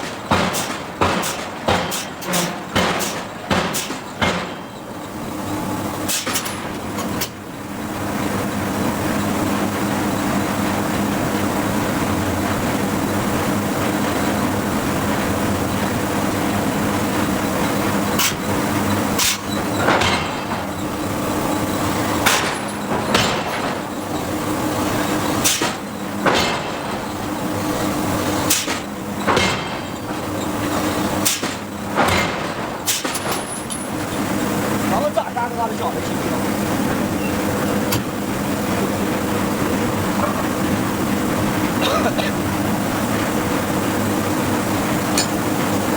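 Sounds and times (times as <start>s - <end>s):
shop machinery humming: 0.0s - 45.9s
forging hammer striking hot steel: 0.2s - 4.8s, 19.2s - 20.6s, 22.2s - 23.9s, 31.2s - 33.8s.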